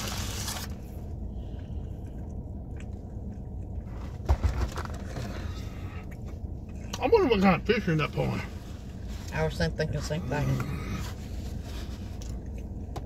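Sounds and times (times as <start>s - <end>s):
person chewing a sandwich: 0.0s - 4.2s, 4.9s - 7.0s, 10.6s - 13.0s
low rumble: 0.0s - 13.0s.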